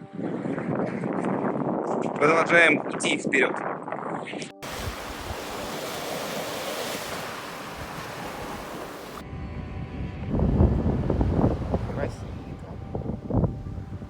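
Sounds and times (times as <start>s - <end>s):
wind rumbling on microphone: 0.0s - 14.0s
surf washing on shore: 4.6s - 9.2s.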